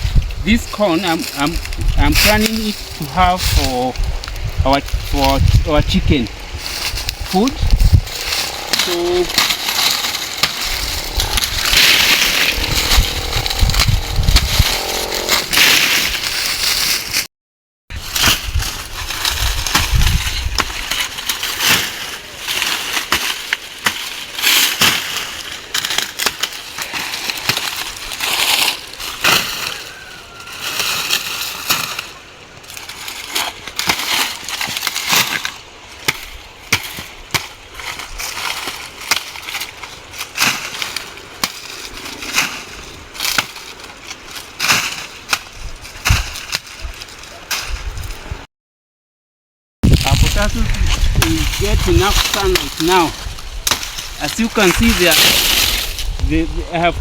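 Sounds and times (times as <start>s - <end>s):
dry stalks crackling and snapping: 0.0s - 17.3s, 17.9s - 48.4s, 49.8s - 57.0s
low thumps: 2.8s - 15.8s.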